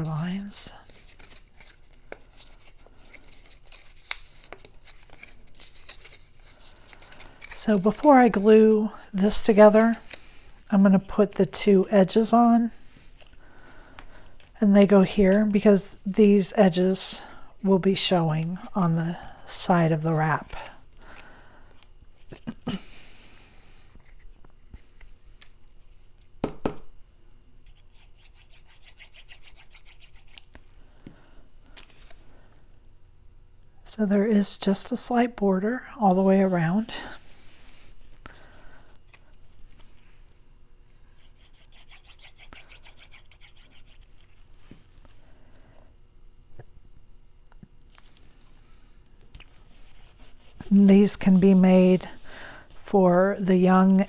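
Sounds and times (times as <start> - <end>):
paper rubbing and rustling: 0.8 - 10.3
card being folded: 0.8 - 12.3, 19.5 - 23.1, 31.7 - 32.2
sharp taps on paper: 26.4 - 26.8
scratchy strokes on paper: 27.8 - 30.4, 41.1 - 44.4, 49.6 - 52.2.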